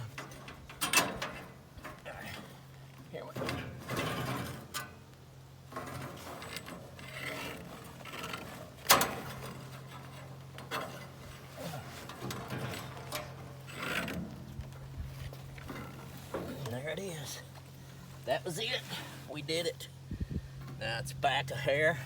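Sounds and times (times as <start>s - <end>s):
band blade scraping against wheel: 5.8s - 14.4s.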